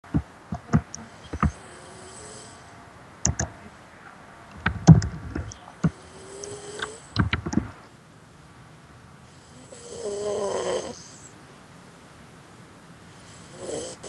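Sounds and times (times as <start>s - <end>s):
sharp clicks and knocks: 0.0s - 1.6s, 3.2s - 3.7s, 4.5s - 7.8s
soft snoring with whistling breaths: 1.0s - 2.8s, 5.9s - 7.2s, 9.3s - 11.4s, 13.2s - 14.0s.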